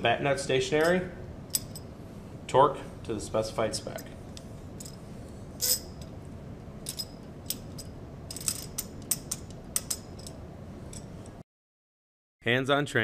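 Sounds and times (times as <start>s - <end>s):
steady low hiss: 0.0s - 11.4s
wrenches clicking and clinking: 6.8s - 11.3s.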